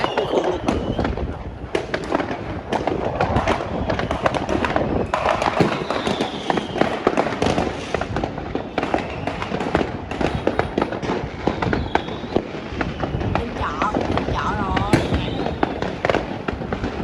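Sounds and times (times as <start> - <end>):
fireworks cracks and bangs: 0.0 - 17.0
faint falling whistle: 5.1 - 6.9, 11.6 - 13.2.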